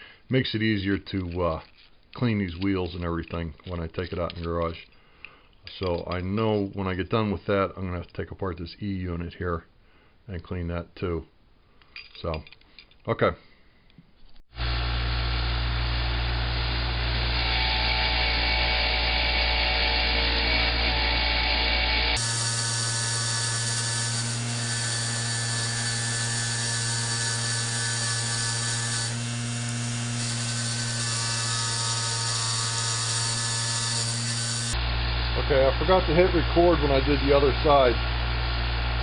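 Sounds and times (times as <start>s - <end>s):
electric motor hum: 14.6s - 39.0s.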